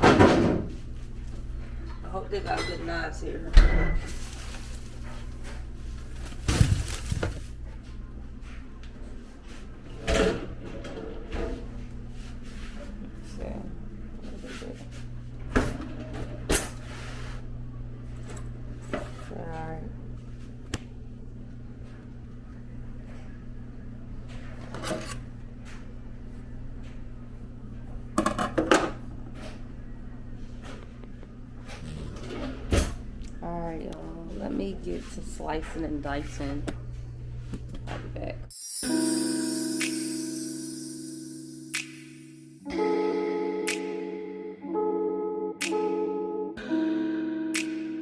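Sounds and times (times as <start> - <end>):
kitchen drawers and cupboards knocking: 0.0 - 0.8
steady low hum: 0.0 - 28.2, 28.8 - 38.5
drawers and cupboard doors opening: 31.7 - 33.0.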